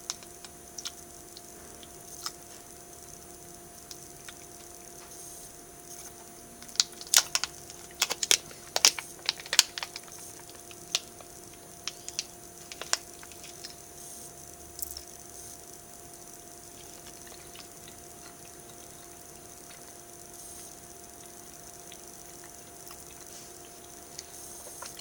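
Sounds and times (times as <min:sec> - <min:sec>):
faint steady hum: 0:00.0 - 0:25.0
wet mouth clicks chewing: 0:16.8 - 0:25.0.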